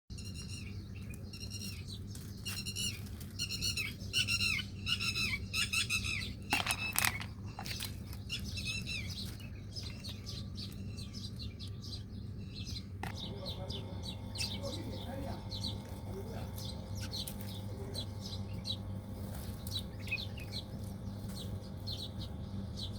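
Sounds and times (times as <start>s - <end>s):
birds chirping: 0.1s - 22.9s
steady low hum: 0.1s - 22.9s.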